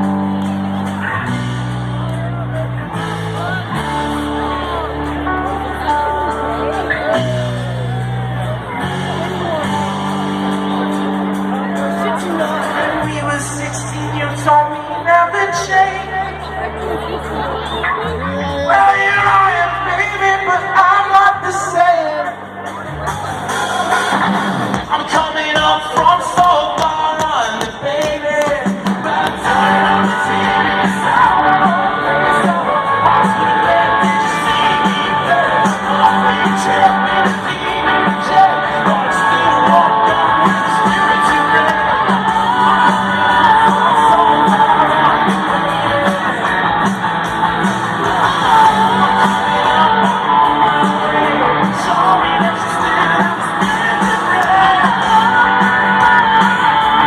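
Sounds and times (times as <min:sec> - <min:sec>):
electric guitar: 0:00.0 - 0:57.0
live rock band: 0:00.0 - 0:57.0
man singing lead vocals: 0:11.0 - 0:17.1, 0:17.9 - 0:22.8, 0:23.6 - 0:57.0.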